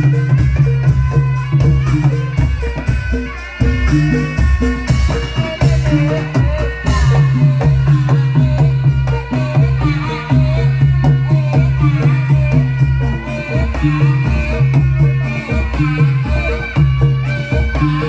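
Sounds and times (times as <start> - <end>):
drums: 0.0 - 18.0
wavering melody line: 0.0 - 18.0.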